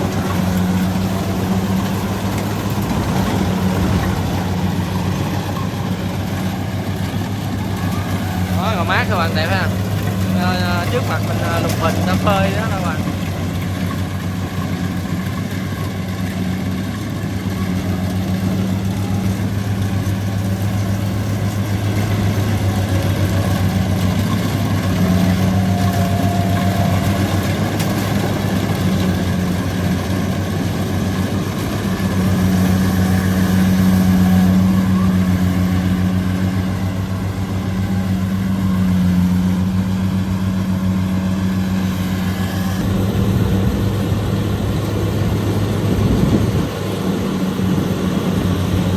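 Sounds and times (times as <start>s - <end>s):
combine harvester engine droning: 0.0s - 48.9s.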